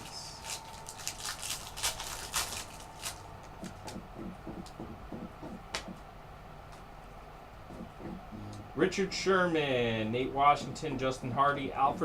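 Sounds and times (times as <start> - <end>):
trading cards clicking and rustling: 0.4 - 6.0.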